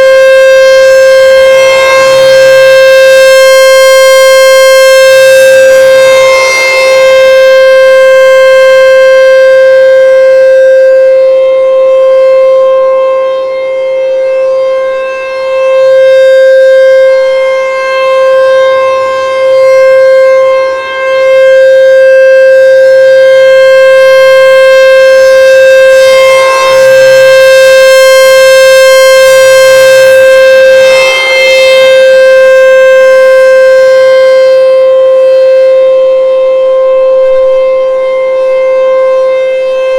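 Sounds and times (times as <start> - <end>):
warning siren steady tone: 0.0 - 39.9.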